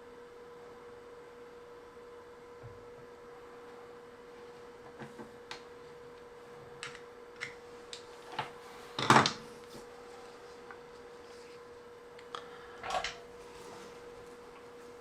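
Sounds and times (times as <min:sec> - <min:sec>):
steady electrical hum: 0:00.0 - 0:15.0
objects clattering: 0:12.8 - 0:13.2.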